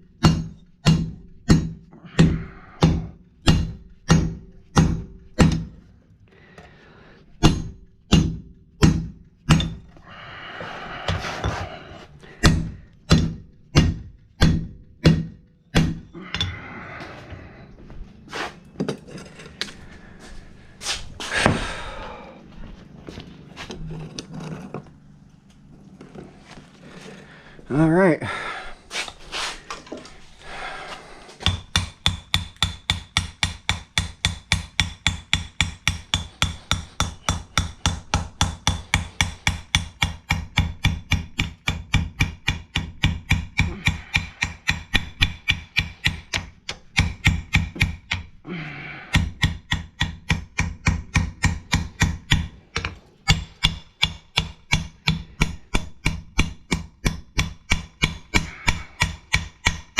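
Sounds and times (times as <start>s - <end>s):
hammer striking steel on anvil: 0.2s - 5.7s, 7.4s - 9.8s, 12.4s - 16.6s, 31.4s - 48.4s, 49.1s - 59.9s.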